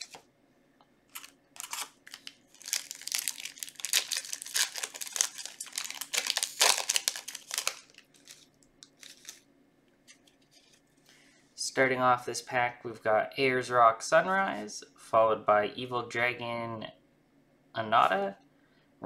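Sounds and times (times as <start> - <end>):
foil wrapper crinkling and tearing: 1.1 - 9.5.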